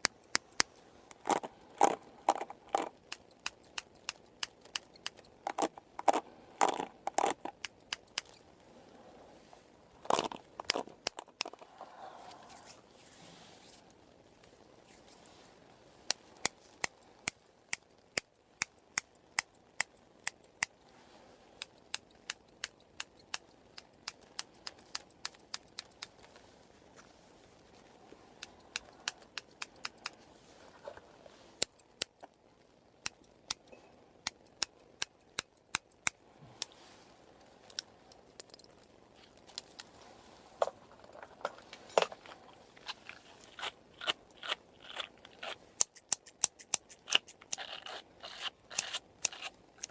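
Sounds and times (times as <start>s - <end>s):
scissors snipping: 43.4s - 49.9s.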